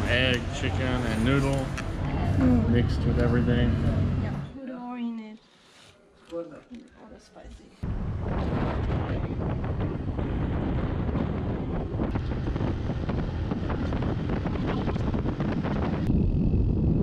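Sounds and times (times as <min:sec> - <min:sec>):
wind buffeting microphone: 0:07.8 - 0:17.0.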